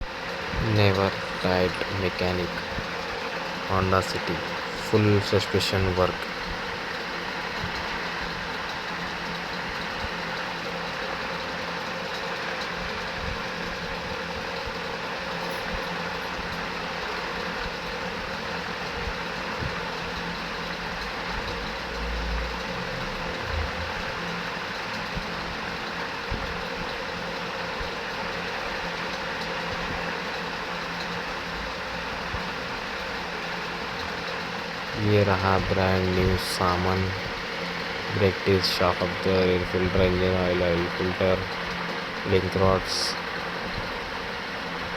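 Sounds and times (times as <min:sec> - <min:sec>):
vehicle engine running: 0:00.6 - 0:27.0.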